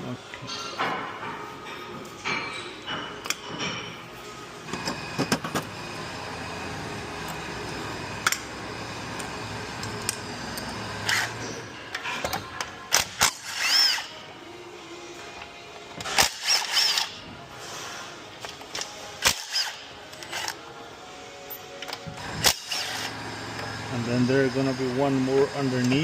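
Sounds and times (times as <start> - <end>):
power tool running: 4.7 - 11.8, 13.0 - 14.2, 16.0 - 17.2, 22.1 - 26.0
tool spinning up: 10.0 - 11.4, 22.3 - 24.1.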